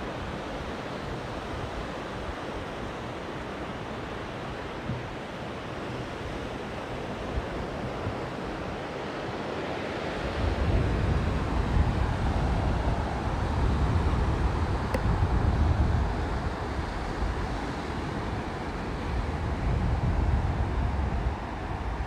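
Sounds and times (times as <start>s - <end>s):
sea surf washing on beach: 0.0s - 22.0s
wind buffeting microphone: 10.2s - 22.0s.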